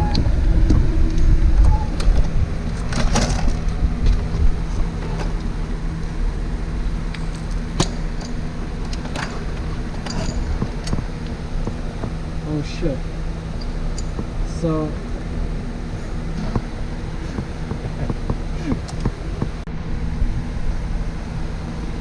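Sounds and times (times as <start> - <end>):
low mechanical hum: 0.0 - 22.0.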